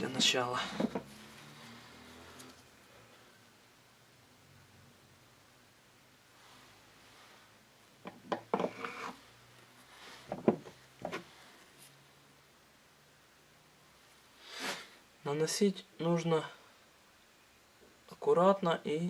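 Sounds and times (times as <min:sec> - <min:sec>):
brief scrapes on workbench: 0:14.5 - 0:14.9.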